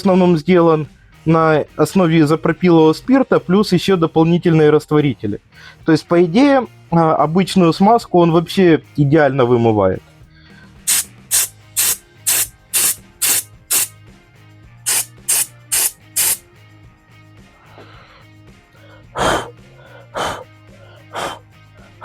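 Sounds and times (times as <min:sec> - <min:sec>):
quiet background music: 0:00.0 - 0:22.0
aerosol can spraying: 0:10.9 - 0:13.9, 0:14.9 - 0:16.4.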